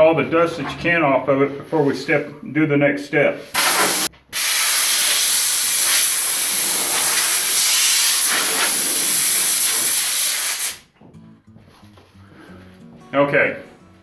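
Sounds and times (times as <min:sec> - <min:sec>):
compressed air blow gun hissing: 0:03.5 - 0:10.9.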